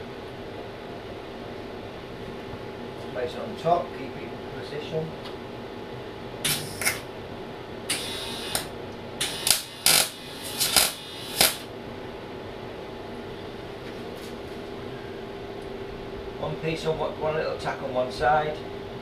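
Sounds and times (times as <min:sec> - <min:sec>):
welder steady hum: 0:06.2 - 0:11.8
welding arc crackle: 0:06.5 - 0:07.0, 0:07.9 - 0:11.7.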